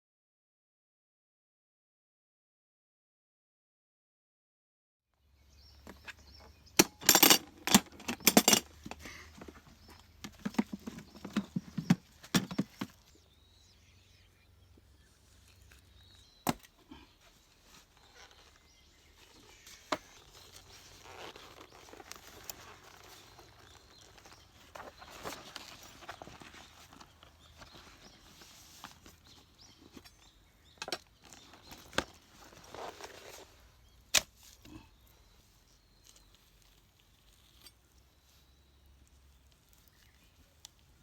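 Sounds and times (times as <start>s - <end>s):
hollow knocks and clatter: 6.8s - 13.0s.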